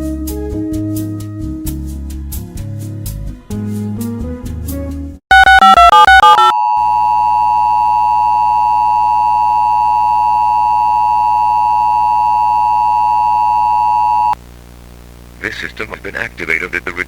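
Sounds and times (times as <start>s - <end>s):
short beeps stepping in pitch: 5.3s - 14.4s
two-tone attention signal: 5.3s - 14.4s.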